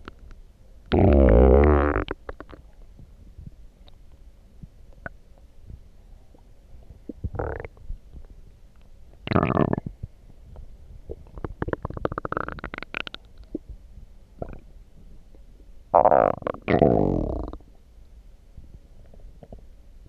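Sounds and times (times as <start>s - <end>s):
stomach growling and gurgling: 6.9s - 8.0s, 9.3s - 10.1s, 11.1s - 13.7s, 14.4s - 14.7s, 16.0s - 17.7s.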